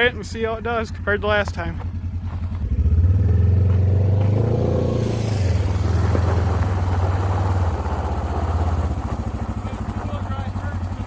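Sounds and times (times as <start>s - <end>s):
engine revving and pulling away: 0.0s - 11.0s.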